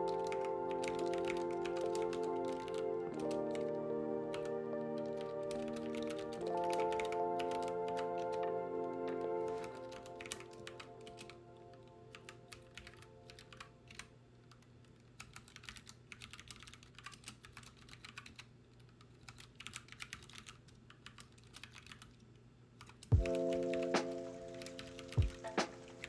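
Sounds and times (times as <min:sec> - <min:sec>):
keyboard typing clicks: 0:00.0 - 0:08.5, 0:09.1 - 0:14.6, 0:15.2 - 0:18.5, 0:22.8 - 0:26.0
background music: 0:00.0 - 0:14.0, 0:23.1 - 0:26.0.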